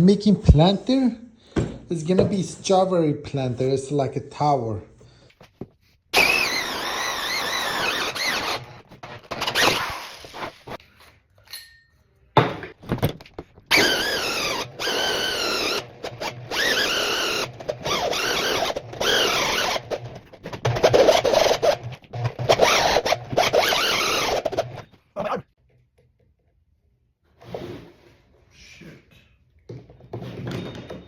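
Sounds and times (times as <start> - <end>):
woodworking tool squealing: 6.1 - 10.5, 13.7 - 25.0.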